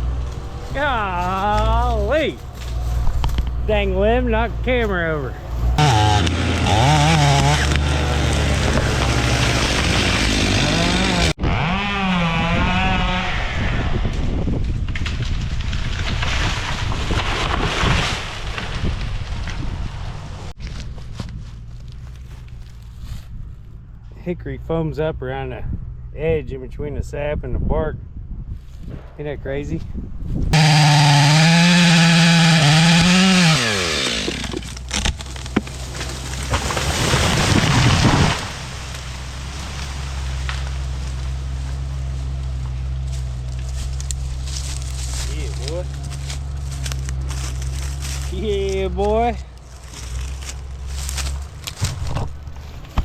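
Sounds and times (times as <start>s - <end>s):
sharp cracks and knocks: 5.8s - 10.6s, 14.1s - 22.7s, 30.7s - 41.8s, 42.5s - 48.4s, 49.6s - 53.0s
two-stroke chainsaw engine running: 5.8s - 12.8s, 30.5s - 35.0s.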